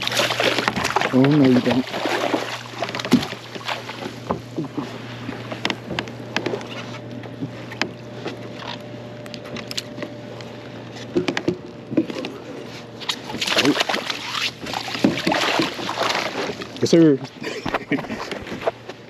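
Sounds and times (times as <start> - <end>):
steady low hum: 0.0 - 19.0
clicks and knocks on kayak: 2.8 - 4.9, 5.5 - 10.1, 11.0 - 12.4.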